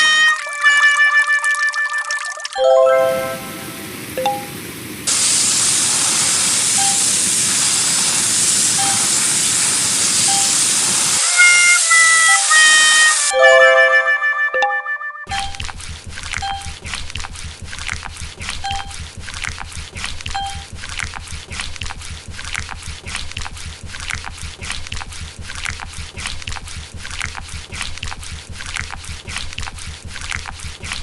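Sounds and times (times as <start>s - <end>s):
car wash water spraying: 3.0s - 13.3s, 15.3s - 31.0s
short faint beeps: 4.2s - 4.6s, 13.3s - 15.6s.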